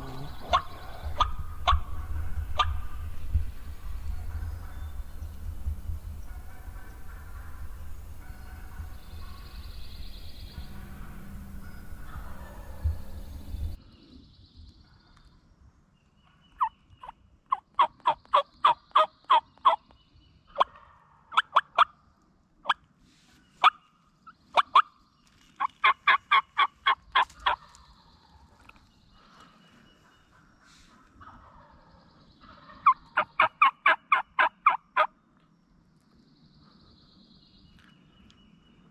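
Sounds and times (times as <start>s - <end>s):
turkey gobbling: 0.0s - 13.8s, 20.6s - 21.9s, 24.6s - 24.9s, 25.6s - 27.8s, 30.0s - 31.8s, 32.4s - 35.1s.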